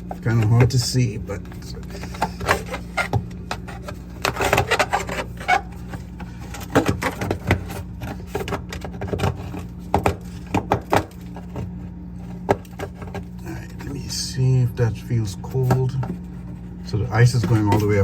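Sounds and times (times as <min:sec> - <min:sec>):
steady low hum: 0:00.0 - 0:18.0
tool chipping and scraping ice: 0:02.1 - 0:05.8.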